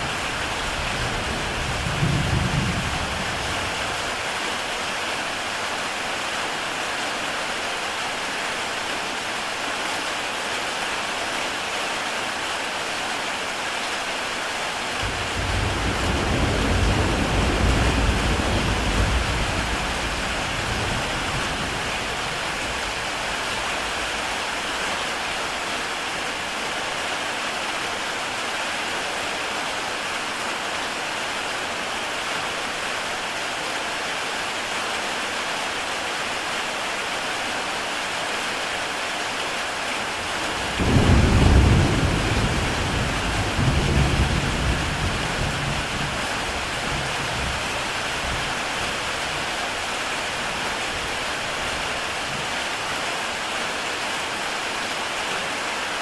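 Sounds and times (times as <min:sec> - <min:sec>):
heavy rain on a tile roof: 0:00.0 - 0:56.0
thunder rumbling: 0:15.0 - 0:24.4, 0:40.6 - 0:47.6.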